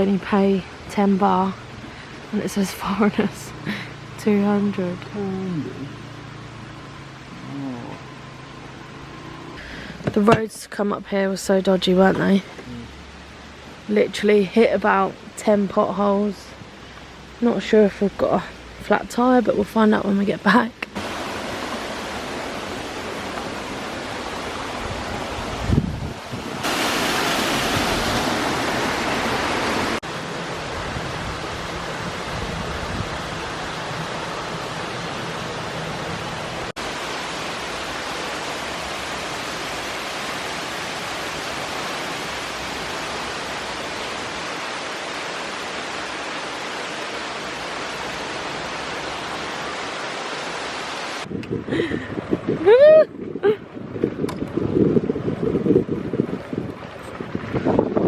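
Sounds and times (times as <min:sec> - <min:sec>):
waterfall rushing: 0:20.9 - 0:53.0.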